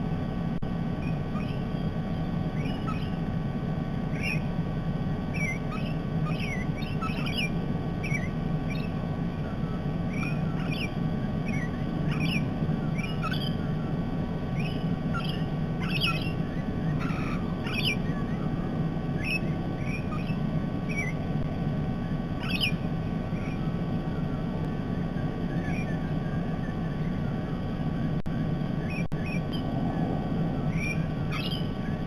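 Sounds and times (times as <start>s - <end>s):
steady low hum: 0.0s - 32.0s
parrots chirping and squeaking: 2.6s - 3.2s, 5.3s - 9.0s, 10.1s - 13.6s, 14.5s - 18.4s, 19.2s - 21.2s, 22.4s - 23.7s, 28.8s - 30.0s, 30.6s - 32.0s.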